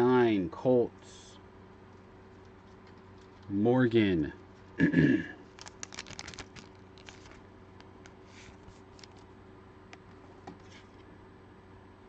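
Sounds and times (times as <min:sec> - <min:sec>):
cards and plastic sleeves rustling: 0:02.3 - 0:03.5, 0:05.4 - 0:09.3.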